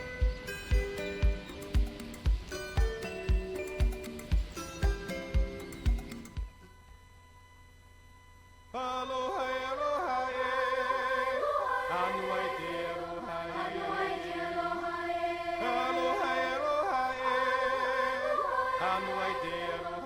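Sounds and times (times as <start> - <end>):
faint low hum: 0.0 - 20.0
voices singing with accompaniment: 8.8 - 20.0.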